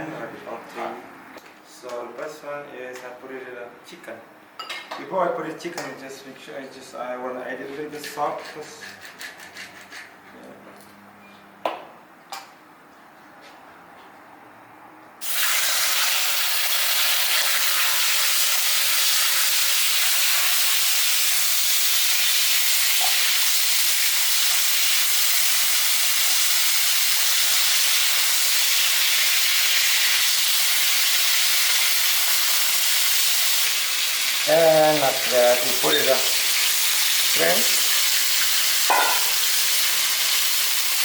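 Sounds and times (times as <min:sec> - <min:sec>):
chicken sizzling in a pan: 0:15.2 - 0:41.0.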